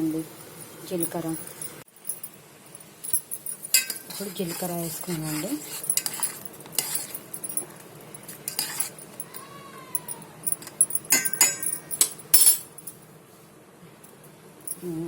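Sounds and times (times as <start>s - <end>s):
spoon scraping metal pot: 3.7s - 7.3s, 8.3s - 9.1s.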